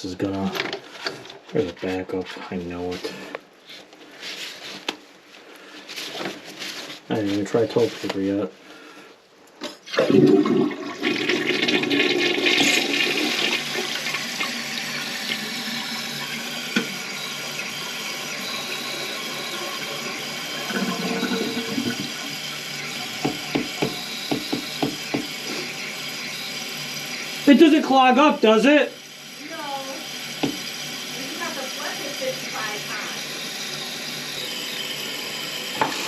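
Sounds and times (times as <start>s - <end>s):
toilet flushing: 9.9s - 36.0s
toilet tank refilling hiss: 9.9s - 36.0s.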